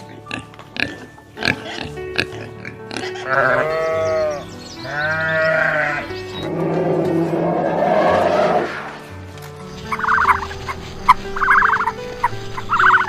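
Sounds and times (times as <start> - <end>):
farm animal grunting: 0.0 - 9.0
background music: 0.0 - 13.0
animal long calls: 3.1 - 9.0.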